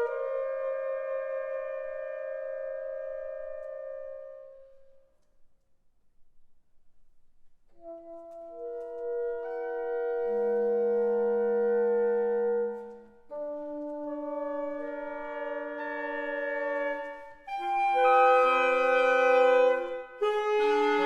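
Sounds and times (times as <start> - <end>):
reed quintet holding chords: 8.8 - 21.0.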